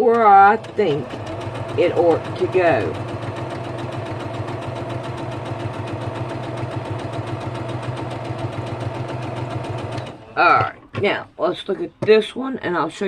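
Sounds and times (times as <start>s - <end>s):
sewing machine running: 0.0s - 10.4s.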